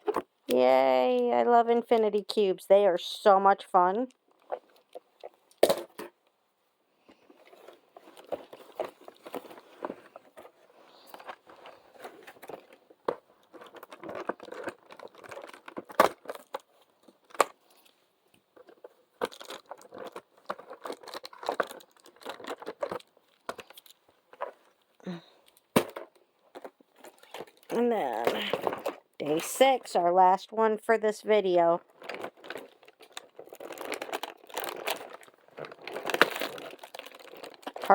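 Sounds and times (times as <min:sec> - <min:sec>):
packaging crinkling and tearing: 0:07.4 - 0:29.5, 0:31.8 - 0:37.9.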